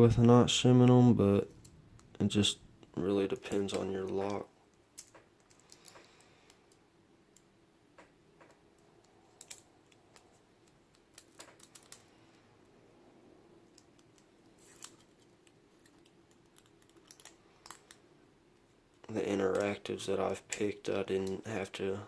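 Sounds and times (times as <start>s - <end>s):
faint steady hum: 0.0s - 22.0s.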